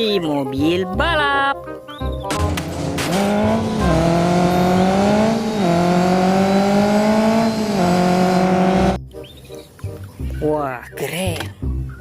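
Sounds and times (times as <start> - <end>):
race car engine accelerating: 2.4 - 9.0.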